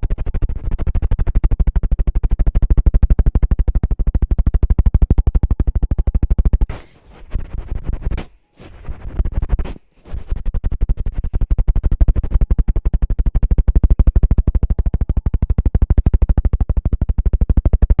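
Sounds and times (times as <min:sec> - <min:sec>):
fast rhythmic strokes: 0:00.0 - 0:18.0
soft irregular scratching: 0:00.2 - 0:16.6.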